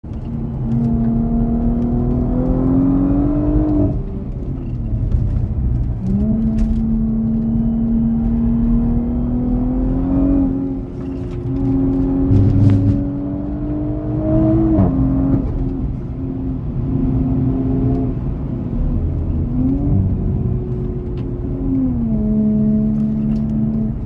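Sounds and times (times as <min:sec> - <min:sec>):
turbocharged engine revving: 0:06.0 - 0:15.7.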